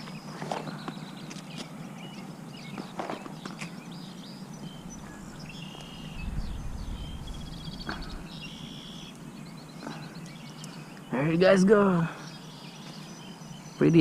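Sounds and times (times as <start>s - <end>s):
small birds chirping: 0.0s - 14.0s
steady low hum: 0.0s - 14.0s
low rumble: 4.7s - 8.5s.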